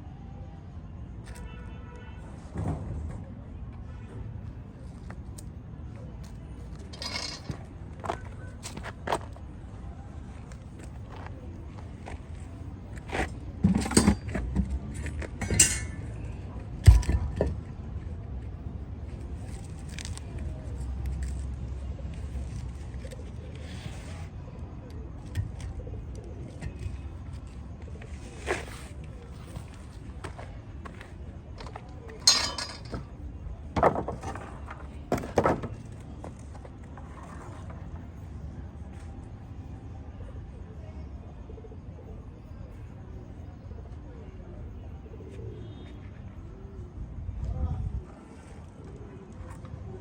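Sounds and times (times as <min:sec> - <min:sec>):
metal clinking and knocking: 0:06.9 - 0:07.7, 0:15.4 - 0:16.2, 0:32.2 - 0:33.2
hard objects clattering: 0:06.9 - 0:07.8, 0:31.6 - 0:38.0.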